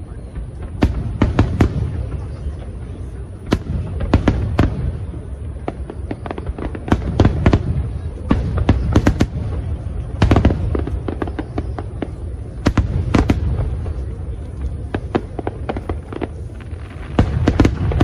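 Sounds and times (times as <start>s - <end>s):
firework bangs and crackles: 0.0s - 18.0s.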